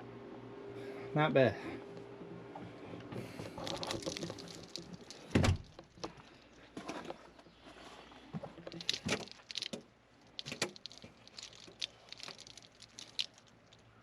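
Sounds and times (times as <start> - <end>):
small rattles of door fittings: 3.3 - 6.3, 8.6 - 13.8.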